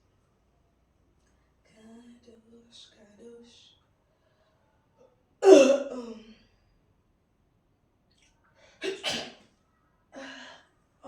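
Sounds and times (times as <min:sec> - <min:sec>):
person sneezing: 0:08.8 - 0:09.4.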